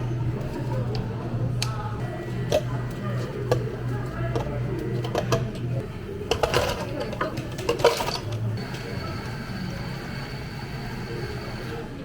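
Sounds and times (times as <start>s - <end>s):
cups and dishes clinking: 0.0s - 9.2s.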